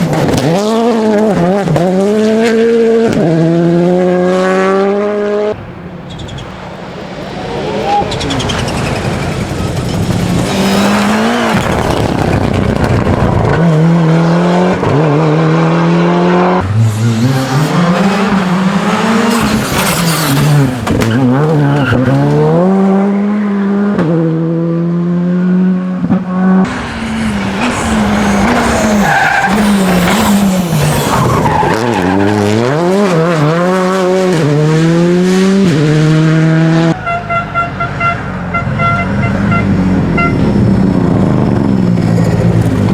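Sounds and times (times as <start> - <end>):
car engine revving: 0.0 - 42.9
tyre skid noise: 6.0 - 14.0, 16.4 - 23.1, 26.6 - 33.5.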